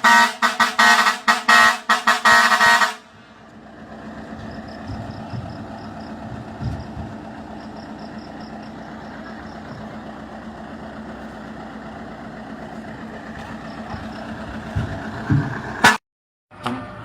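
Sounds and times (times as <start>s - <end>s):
vehicle engine running: 0.0s - 17.0s
brief low thump: 6.3s - 7.2s, 14.7s - 15.6s.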